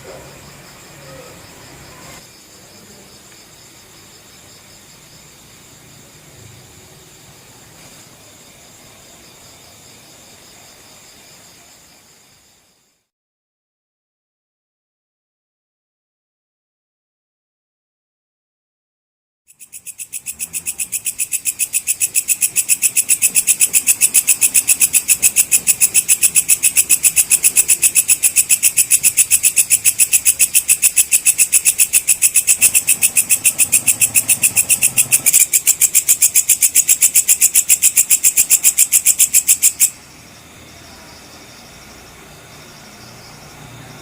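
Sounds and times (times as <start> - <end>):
insect shrill chirping: 19.5 - 43.4.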